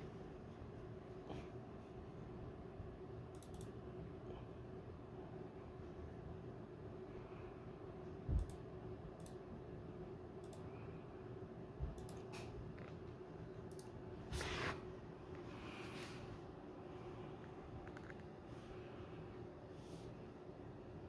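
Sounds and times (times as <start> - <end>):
faint steady hum: 0.0 - 21.0
small clicks: 3.3 - 3.7, 12.0 - 13.0.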